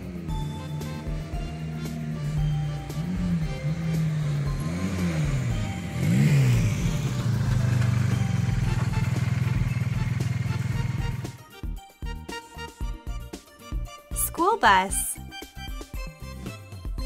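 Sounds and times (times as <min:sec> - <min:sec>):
motorcycle engine revving: 0:00.0 - 0:11.4.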